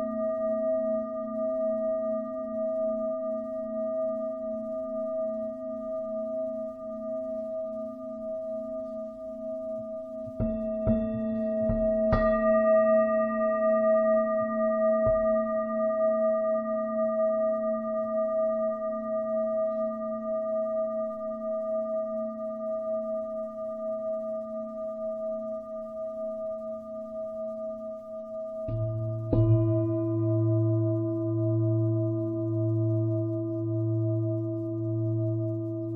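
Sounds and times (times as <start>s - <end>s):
singing bowl ringing: 0.0s - 35.9s
singing bowl being struck: 10.2s - 16.5s, 28.7s - 33.5s.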